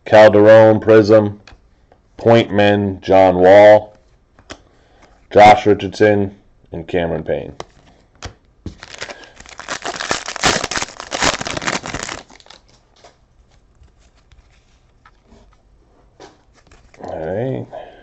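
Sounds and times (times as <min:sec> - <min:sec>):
wrapper tearing and crinkling: 0:08.7 - 0:15.2.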